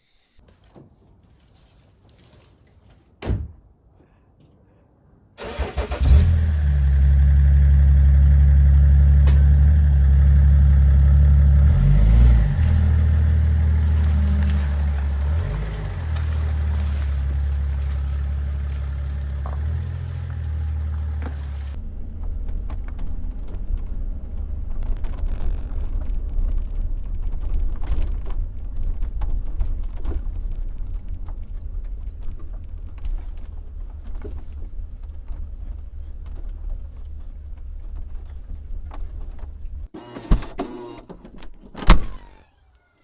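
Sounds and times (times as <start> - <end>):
road and drivetrain rumble: 5.4 - 43.0
body clicks and creaks: 21.2 - 39.9
tailgate squeak: 40.0 - 43.0.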